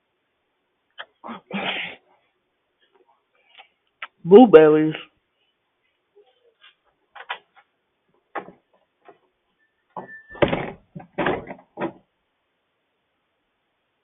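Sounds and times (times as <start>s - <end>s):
knocks and thuds: 8.3s - 8.7s, 10.0s - 12.0s.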